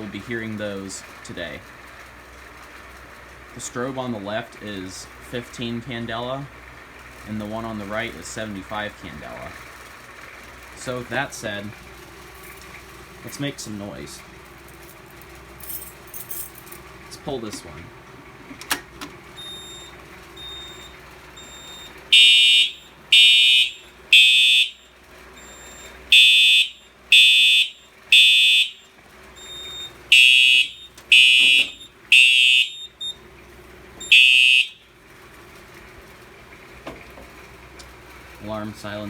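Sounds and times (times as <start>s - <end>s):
fire alarm horn blasts: 19.4s - 33.2s, 34.0s - 34.9s.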